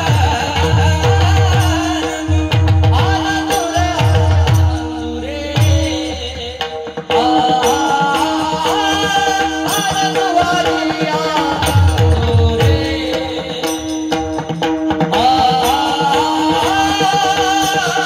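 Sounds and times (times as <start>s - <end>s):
person singing: 0.0s - 14.2s
tabla strokes: 0.0s - 18.0s.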